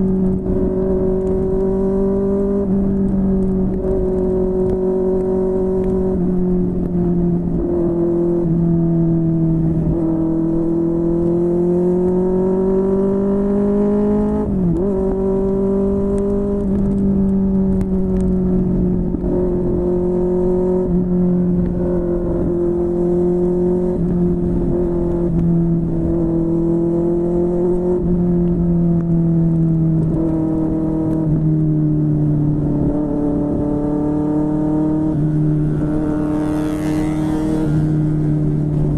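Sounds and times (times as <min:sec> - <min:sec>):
wind and road noise: 0:00.0 - 0:38.9.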